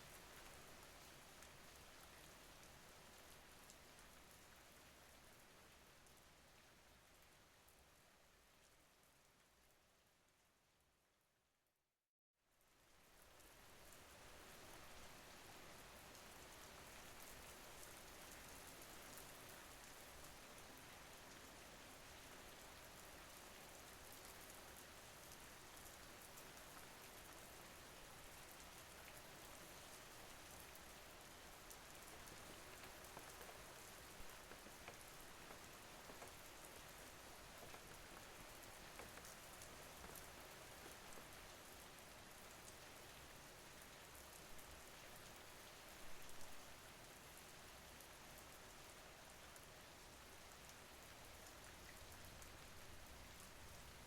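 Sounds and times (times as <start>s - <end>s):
faint steady rain: 0.0s - 54.0s
raindrops ticking: 32.1s - 41.4s.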